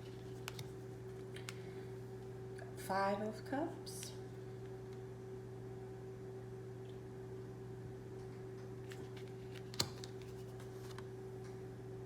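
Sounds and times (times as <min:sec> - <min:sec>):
cards being handled: 0:00.0 - 0:01.6, 0:08.9 - 0:11.1
low room hum: 0:00.0 - 0:12.0.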